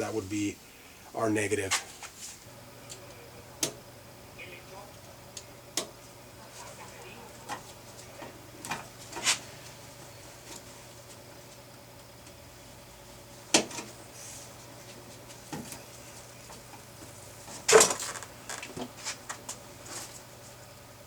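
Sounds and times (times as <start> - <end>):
small tools clacking and clattering: 17.7 - 18.9.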